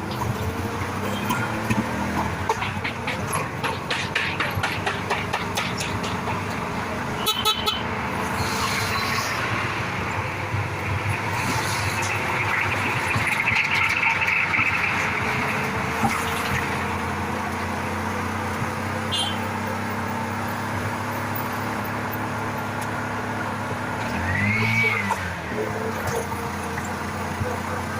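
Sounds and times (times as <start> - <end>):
car engine and road noise: 0.0 - 27.9
vehicle horns honking: 7.2 - 9.3, 19.0 - 19.6.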